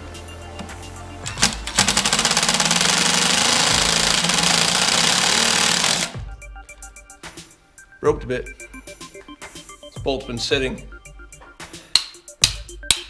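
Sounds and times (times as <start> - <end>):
impact driver rattling: 0.6 - 6.2.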